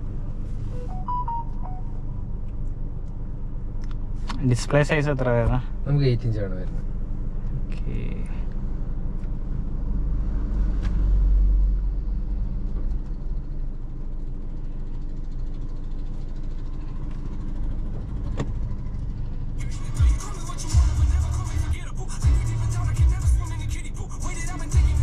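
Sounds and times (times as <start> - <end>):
car engine rumble in cabin: 0.0 - 25.0.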